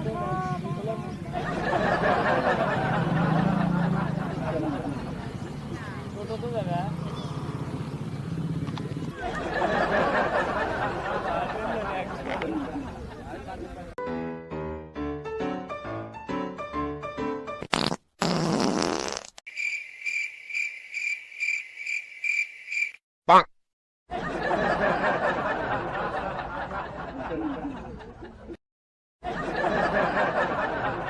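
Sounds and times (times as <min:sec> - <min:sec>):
people laughing: 0:01.2 - 0:06.1, 0:09.1 - 0:14.0, 0:24.1 - 0:28.6, 0:29.2 - 0:31.0
wet fart sound effect: 0:17.6 - 0:19.5
cricket chirp sound effect: 0:19.5 - 0:23.0.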